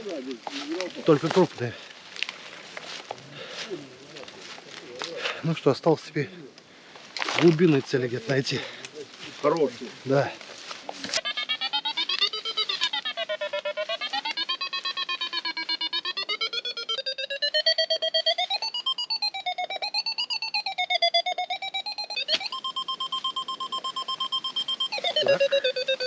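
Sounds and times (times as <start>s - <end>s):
metal detector pulsing tone: 11.2s - 26.0s.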